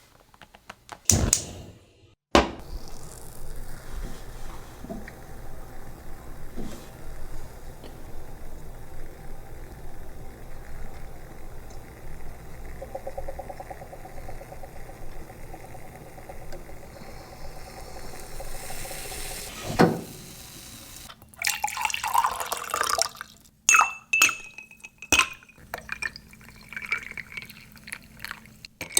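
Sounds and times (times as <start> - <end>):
coffee pouring into a glass: 2.8 - 19.5, 21.2 - 23.5, 24.7 - 28.6
glass clinks: 23.7 - 25.6.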